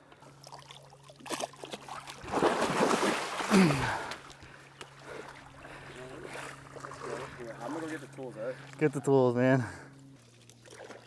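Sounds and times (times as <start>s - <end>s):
low hum: 0.0s - 11.0s
splashing in shallow water: 0.4s - 9.0s, 10.2s - 11.0s
short falling grunt: 3.5s - 4.1s.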